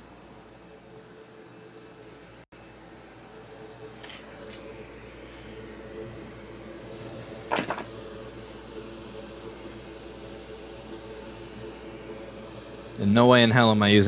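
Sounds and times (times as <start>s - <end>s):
bench fan humming: 0.0s - 14.0s.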